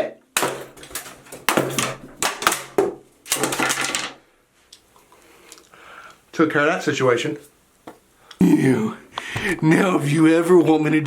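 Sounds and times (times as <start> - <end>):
hammer smashing wooden model: 0.4 - 4.2.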